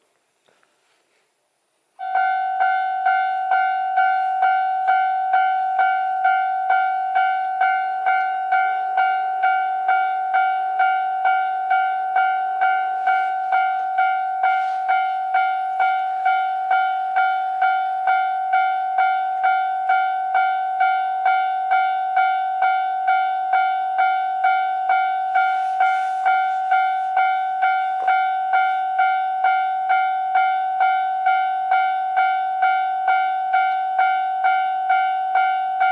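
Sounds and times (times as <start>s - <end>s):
level crossing alarm bell ringing: 2.0s - 35.9s.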